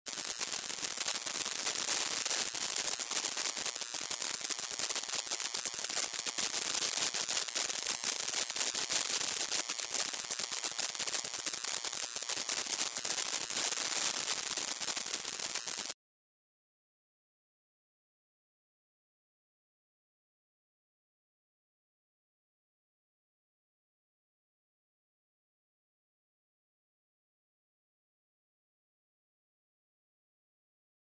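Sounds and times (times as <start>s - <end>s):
electrical crackle with hiss: 0.1s - 16.0s.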